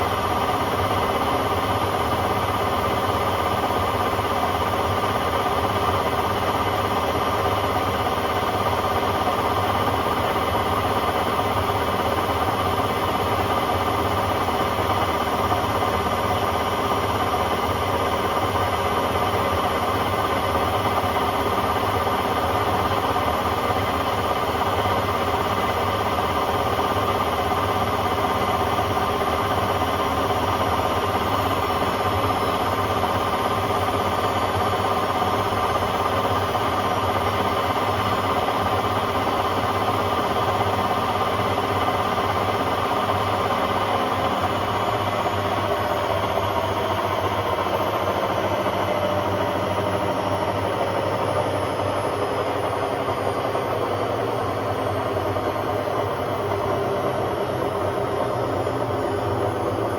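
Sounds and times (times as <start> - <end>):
washing machine spinning: 0.0 - 59.9.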